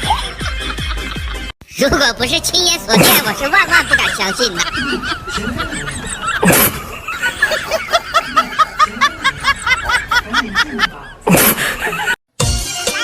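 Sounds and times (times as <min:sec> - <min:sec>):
high-pitched snickering laugh: 0:03.0 - 0:12.2.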